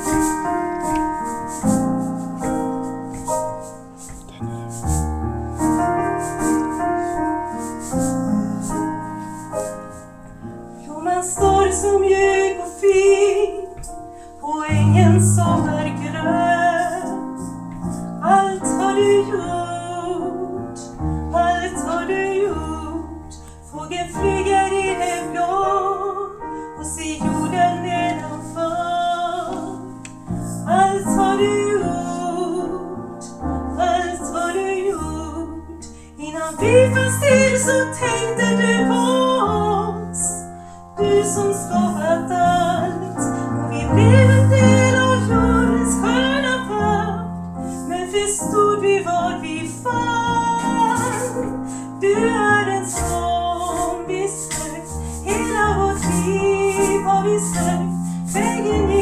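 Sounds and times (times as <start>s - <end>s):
piano chords: 0.0s - 59.0s
woman singing slow song: 10.8s - 17.3s, 18.2s - 30.0s, 30.6s - 40.4s, 41.0s - 47.3s, 47.9s - 59.0s.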